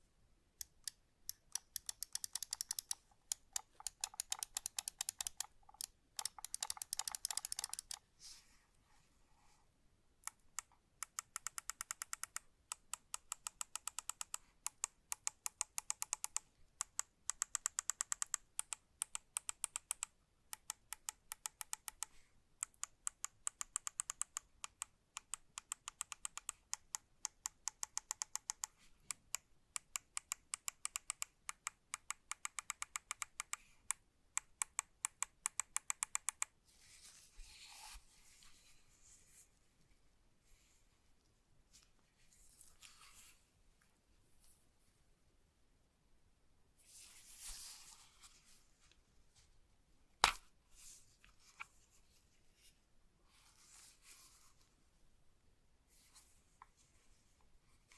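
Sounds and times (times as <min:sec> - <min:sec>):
mouse clicking rapidly: 0:00.6 - 0:08.0, 0:10.2 - 0:36.5.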